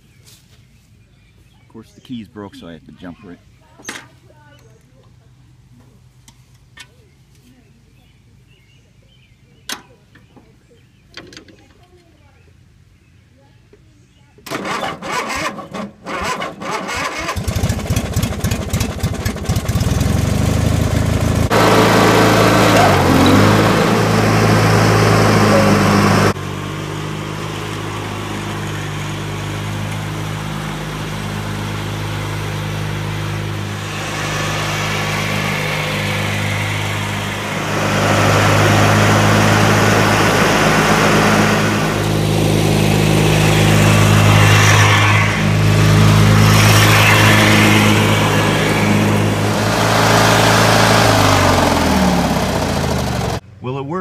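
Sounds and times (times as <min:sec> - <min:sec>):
lawn mower engine running: 0:14.4 - 0:53.4.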